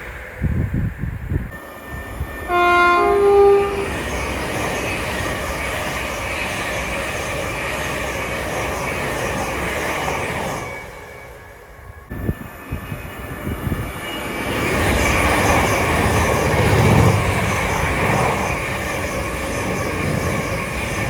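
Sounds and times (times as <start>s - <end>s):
train wheels rumbling on rails: 0.0s - 21.0s
train two-note horn: 2.4s - 4.0s.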